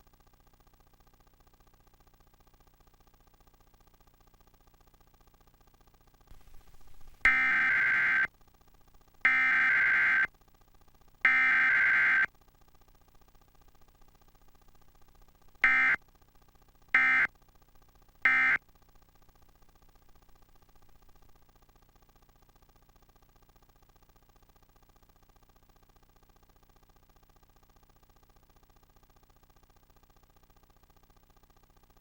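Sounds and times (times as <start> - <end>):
harsh buzzy data bursts: 7.2 - 8.3, 9.3 - 10.3, 11.3 - 12.3, 15.6 - 16.0, 17.0 - 17.3, 18.3 - 18.6.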